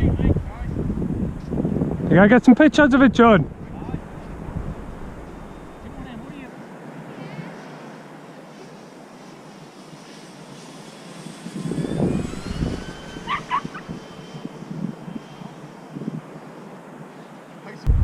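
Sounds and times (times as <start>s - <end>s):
wind buffeting microphone: 0.0s - 6.5s, 11.2s - 16.4s
model plane motor whine: 3.5s - 17.8s.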